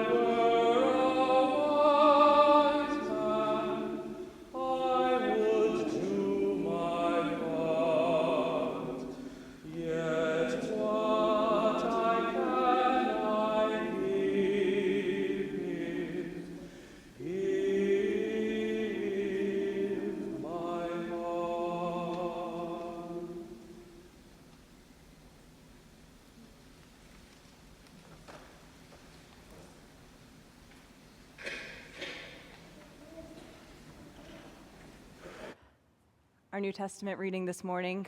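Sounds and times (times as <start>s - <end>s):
choir singing: 0.0s - 24.1s.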